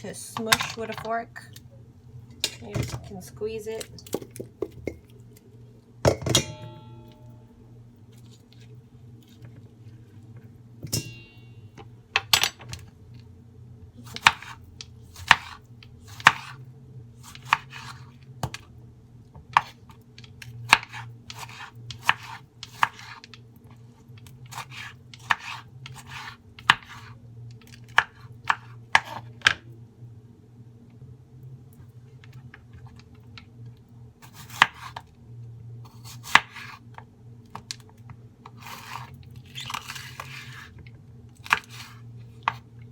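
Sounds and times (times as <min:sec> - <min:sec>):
knife chopping on cutting board: 0:14.1 - 0:14.6, 0:15.2 - 0:16.6, 0:20.7 - 0:23.2, 0:24.5 - 0:27.1, 0:28.0 - 0:29.6, 0:34.2 - 0:35.0, 0:36.0 - 0:36.8.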